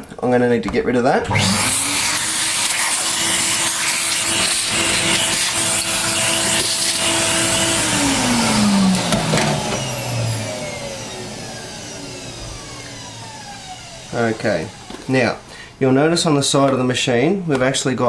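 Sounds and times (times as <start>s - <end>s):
vacuum cleaner running: 1.2s - 15.5s.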